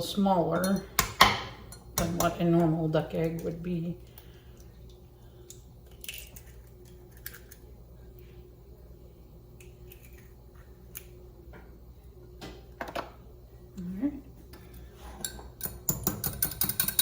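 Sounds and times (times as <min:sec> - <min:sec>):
steady low hum: 0:00.0 - 0:17.0
light clicks and taps of utensils: 0:14.5 - 0:17.0.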